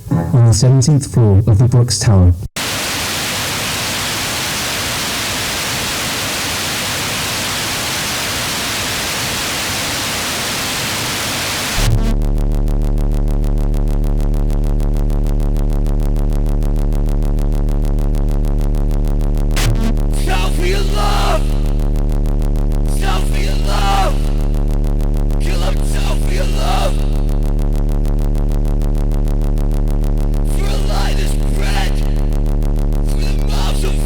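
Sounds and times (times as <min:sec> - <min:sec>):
white noise hiss: 0:02.6 - 0:12.0
deep synthesized bass drone: 0:11.8 - 0:34.0.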